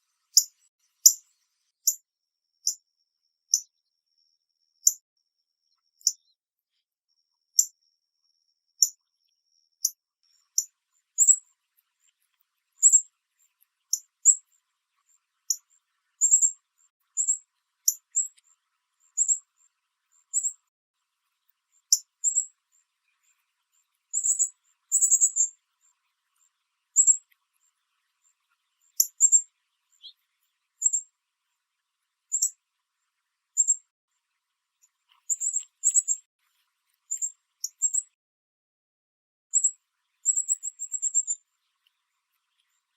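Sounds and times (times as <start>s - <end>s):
bird chip calls: 10.4s - 11.4s, 12.8s - 13.0s, 15.5s - 16.6s, 17.2s - 18.4s, 19.0s - 19.4s, 20.2s - 20.6s, 21.9s - 22.5s, 24.1s - 25.5s, 27.0s - 27.2s, 28.9s - 30.2s, 30.8s - 31.0s, 32.3s - 32.5s, 35.2s - 36.3s, 37.1s - 38.1s, 39.5s - 41.4s.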